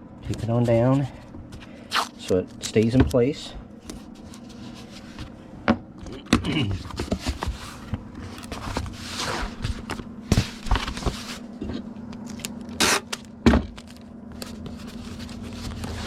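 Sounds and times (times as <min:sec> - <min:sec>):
steady low hum: 0:00.0 - 0:16.0
cardboard scraping and rustling: 0:04.0 - 0:05.4, 0:06.6 - 0:12.5, 0:13.8 - 0:16.0.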